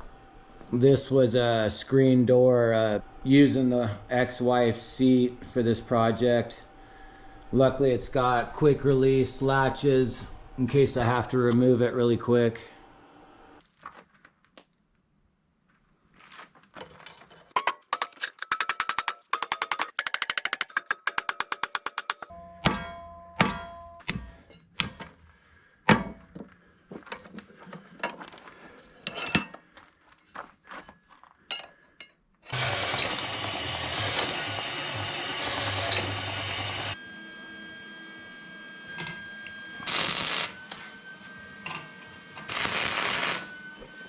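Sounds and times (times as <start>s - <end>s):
metal tools clicking and knocking: 17.6s - 22.3s
welding crackle: 32.6s - 37.0s, 39.9s - 40.6s, 42.5s - 43.5s.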